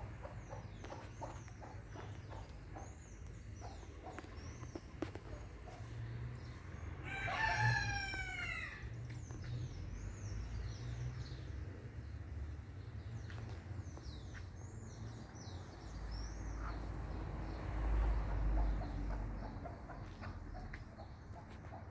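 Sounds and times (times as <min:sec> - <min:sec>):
small birds chirping: 0:00.0 - 0:21.9
rooster crowing: 0:07.0 - 0:08.9.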